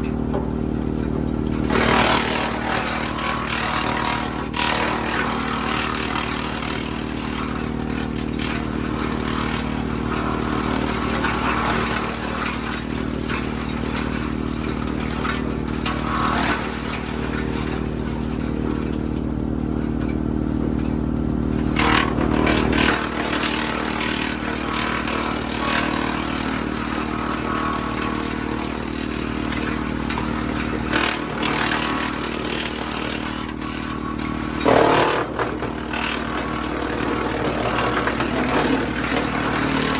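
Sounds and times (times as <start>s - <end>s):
wood chipper chipping branches: 0.0s - 39.9s
branches clattering and scraping: 20.8s - 39.9s.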